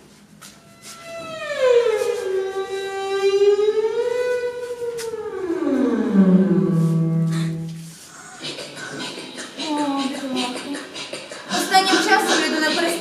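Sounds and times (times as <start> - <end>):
ghostly wail: 1.2 - 7.8.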